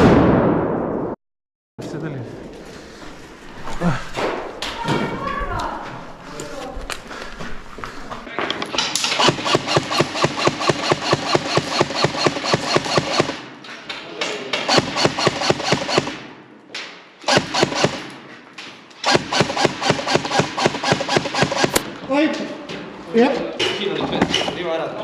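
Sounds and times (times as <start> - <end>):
airsoft rifle automatic fire: 9.0 - 13.4, 14.7 - 16.2, 17.3 - 18.1, 19.0 - 21.8.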